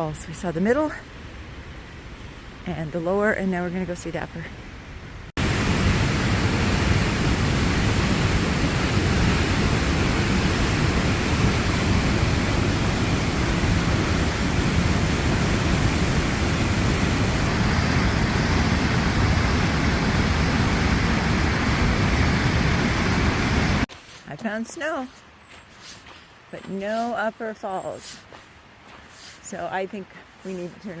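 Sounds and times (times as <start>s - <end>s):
whitewater river roaring: 5.4s - 23.8s.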